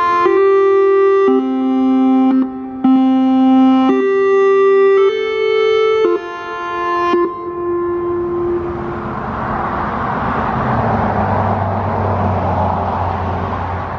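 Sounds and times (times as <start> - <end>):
electronic siren chimes: 0.0 - 10.8
passing car: 3.9 - 13.9
low engine hum: 7.2 - 13.9.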